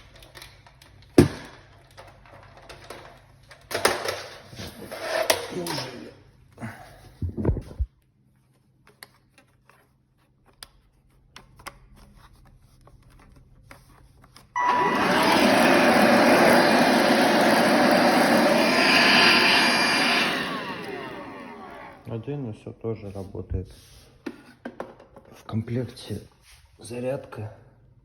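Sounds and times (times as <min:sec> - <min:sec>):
vacuum cleaner motor running: 0:14.6 - 0:22.1.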